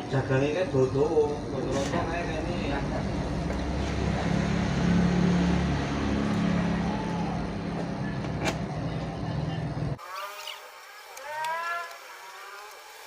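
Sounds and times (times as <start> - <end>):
vehicle engine running: 1.0 - 10.0.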